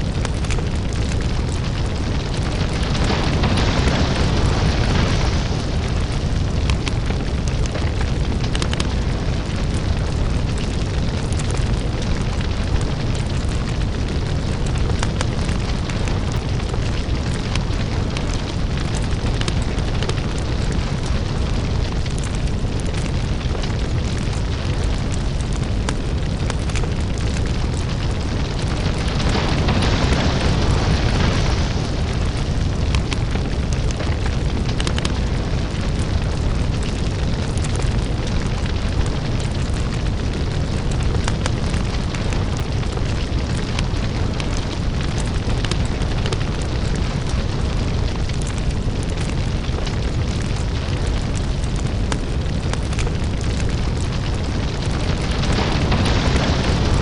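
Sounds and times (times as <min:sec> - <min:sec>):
lava crackles and pops: 0:00.0 - 0:57.0
lava deep rumble: 0:00.0 - 0:57.0
lava hissing surge: 0:00.1 - 0:10.0, 0:24.3 - 0:57.0.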